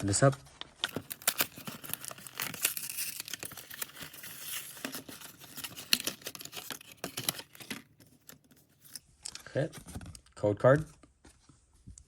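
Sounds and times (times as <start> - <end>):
plastic packaging crackling and tearing: 0.1 - 9.6.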